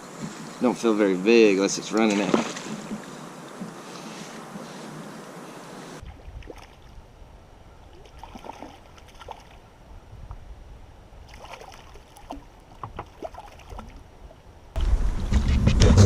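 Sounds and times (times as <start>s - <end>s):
water splashing and trickling: 0.2s - 4.8s, 6.0s - 7.1s, 7.8s - 9.8s, 11.2s - 15.0s.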